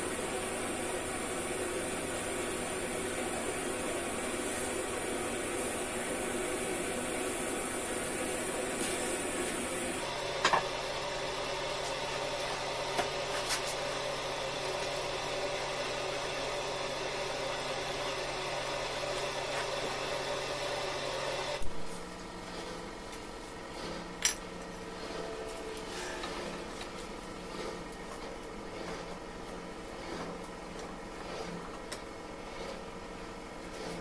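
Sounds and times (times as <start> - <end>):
buffing tool rasping on rubber: 22.4 - 23.0, 24.8 - 33.0.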